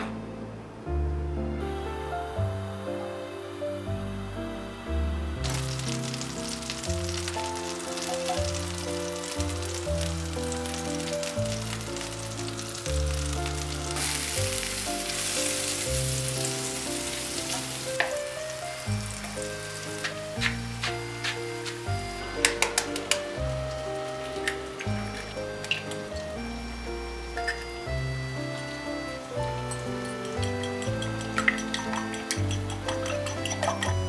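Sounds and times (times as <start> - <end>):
soft background music: 0.0 - 34.0
food sizzling in a frying pan: 5.4 - 21.9, 29.8 - 34.0.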